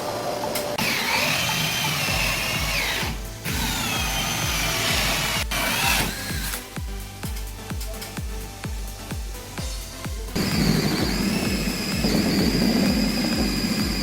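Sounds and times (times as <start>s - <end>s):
power tool whining: 0.8s - 6.7s, 10.4s - 14.0s
music with kick-drum beat: 2.0s - 14.0s.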